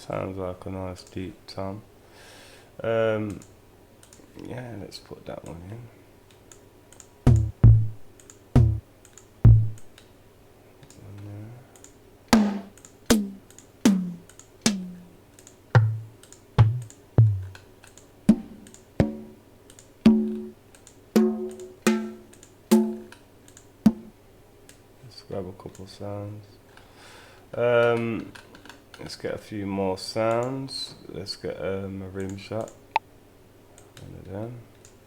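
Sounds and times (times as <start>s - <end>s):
hi-hat ticks: 7.0s - 8.8s, 9.5s - 10.0s, 12.7s - 15.1s, 15.8s - 17.6s
deep toms: 7.3s - 8.8s, 9.5s - 9.9s, 12.4s - 15.1s, 15.7s - 17.6s, 18.3s - 19.4s
kick drum hits: 7.3s - 8.8s, 9.5s - 9.9s, 15.8s - 17.6s, 18.3s - 19.3s, 20.1s - 20.5s, 21.2s - 23.1s.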